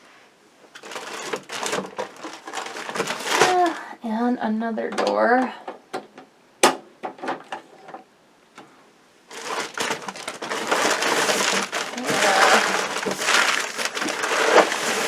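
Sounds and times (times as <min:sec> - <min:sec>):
packing material crinkling: 0:00.8 - 0:03.8, 0:09.3 - 0:15.0.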